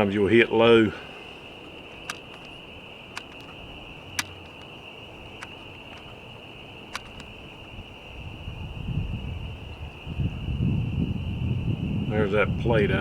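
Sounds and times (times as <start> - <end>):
insects buzzing: 0.0 - 13.0
faint sharp clicks: 1.6 - 6.2, 6.9 - 7.4.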